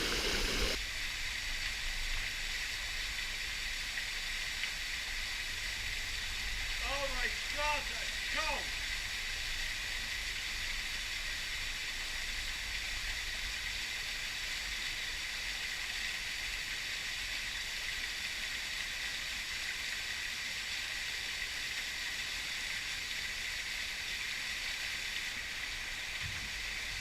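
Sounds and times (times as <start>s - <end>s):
waterfall and river rushing: 0.0s - 0.8s.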